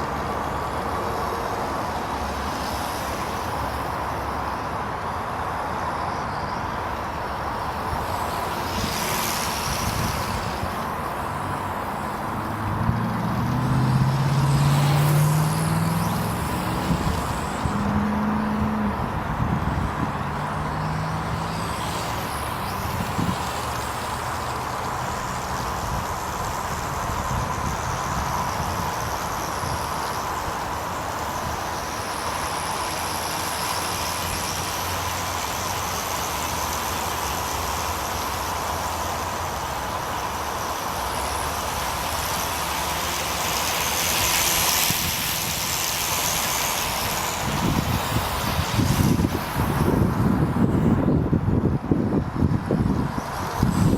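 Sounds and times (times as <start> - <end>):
drone propellers whining: 0.0 - 53.9
wind buffeting microphone: 7.8 - 24.2, 46.5 - 53.9.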